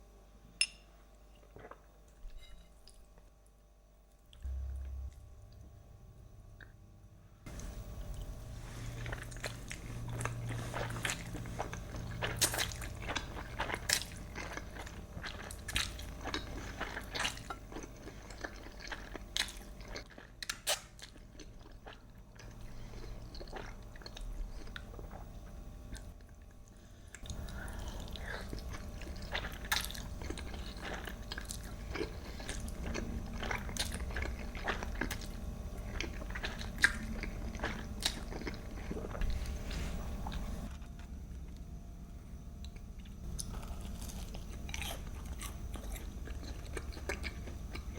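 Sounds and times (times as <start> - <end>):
crisp chewing crunches: 7.5 - 25.2, 27.2 - 41.7, 42.6 - 47.9.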